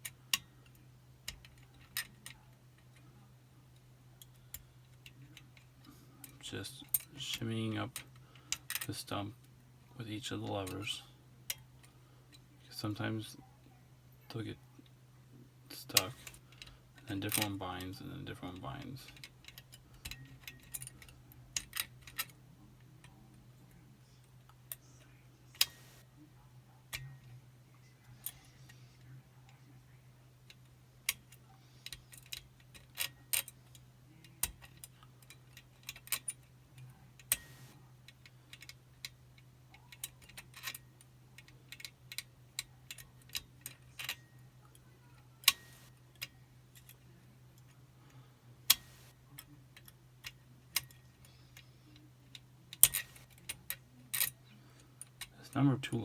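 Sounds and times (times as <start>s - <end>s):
small metallic clicks of lock picking: 0.0s - 3.0s, 19.1s - 22.4s, 30.5s - 40.8s, 41.4s - 47.0s, 48.7s - 51.0s, 51.9s - 54.4s.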